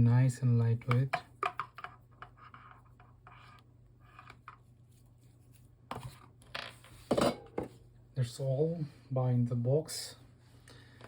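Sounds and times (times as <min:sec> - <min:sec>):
light scraping and rubbing: 0:01.8 - 0:07.1.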